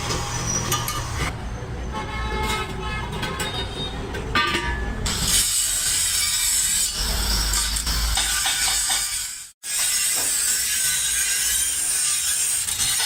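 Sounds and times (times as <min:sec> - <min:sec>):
metal scraping and grinding: 0:04.7 - 0:13.0.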